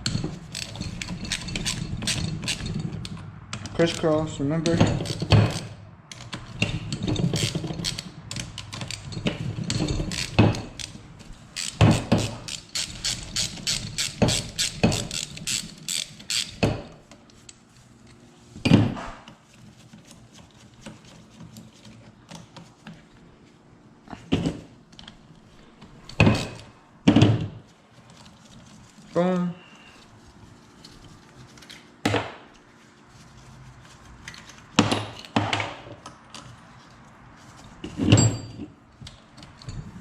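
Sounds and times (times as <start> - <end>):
socket ratchet clicking: 11.6 - 16.6.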